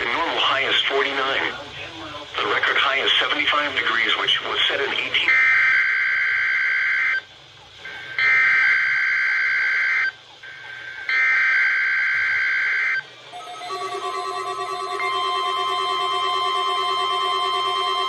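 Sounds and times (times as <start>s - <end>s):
alert tone beeps: 13.3s - 18.0s.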